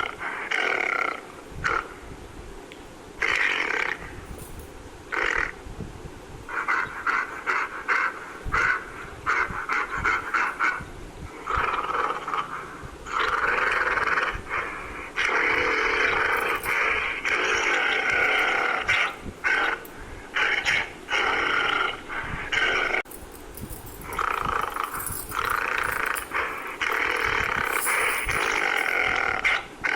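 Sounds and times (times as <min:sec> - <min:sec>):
gorilla long calls: 0:11.4 - 0:23.0.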